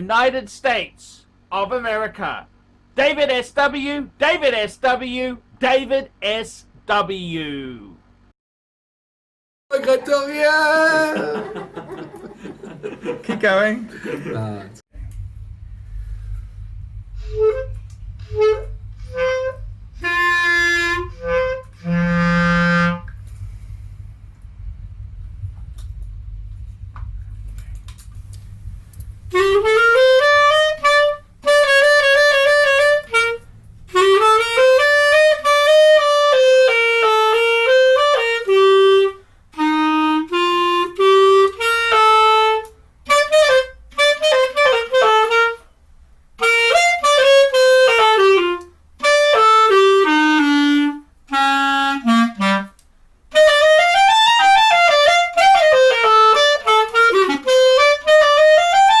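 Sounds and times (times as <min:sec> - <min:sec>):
low rumble: 0:14.9 - 0:36.0
wind instrument slow melody: 0:15.7 - 0:45.7, 0:46.4 - 0:59.0.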